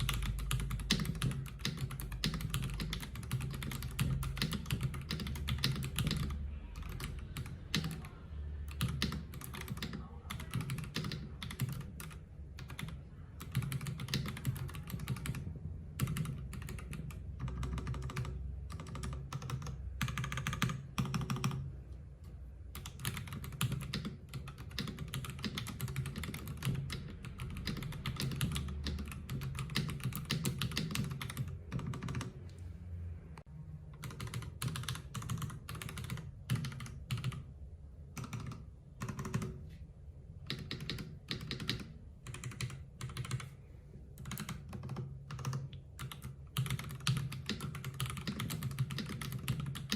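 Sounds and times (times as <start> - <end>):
mechanical keyboard typing: 0.0 - 21.7, 22.7 - 32.4, 34.0 - 37.5, 38.1 - 39.7, 40.4 - 43.6, 44.2 - 49.9.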